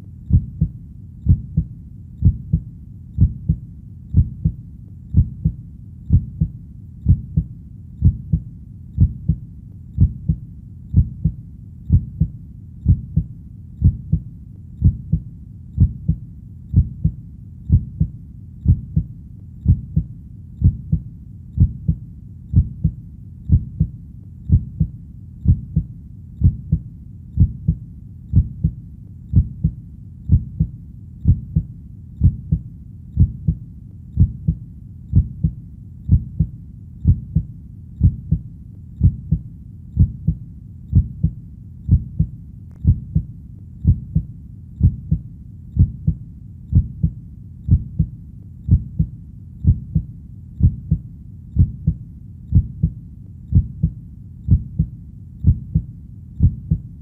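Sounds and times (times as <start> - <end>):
heartbeat double thumps: 0.3 - 9.4, 10.0 - 57.0.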